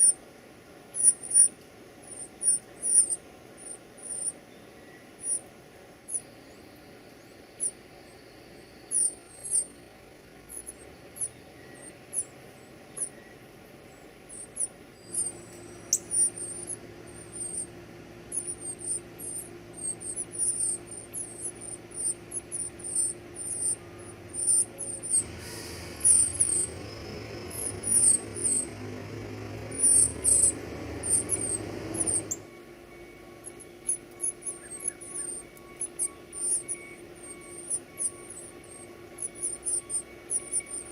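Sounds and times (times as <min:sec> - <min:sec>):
baby birds cheeping: 0:00.0 - 0:00.2, 0:00.8 - 0:40.9
low steady hum: 0:00.0 - 0:40.9
rushing noise: 0:25.0 - 0:32.5.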